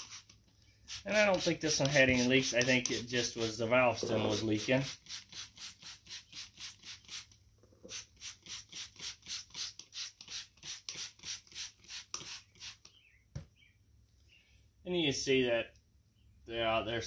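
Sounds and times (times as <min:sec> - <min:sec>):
spray bottle squirting: 0:00.0 - 0:13.0.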